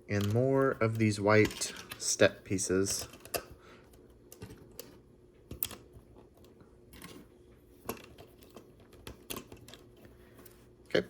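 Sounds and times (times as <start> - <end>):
plastic pieces clicking together: 0.1 - 2.2.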